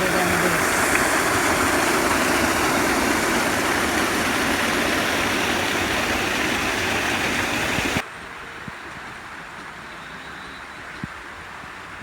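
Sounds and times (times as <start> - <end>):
outdoor shower water pouring: 0.0 - 8.0.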